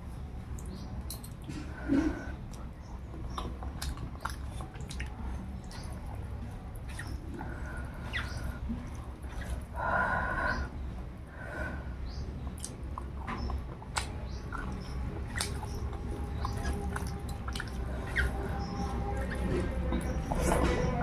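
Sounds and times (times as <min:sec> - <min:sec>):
low steady hum: 0:00.0 - 0:21.0
wet chewing and lip smacks: 0:02.4 - 0:09.7, 0:12.4 - 0:21.0.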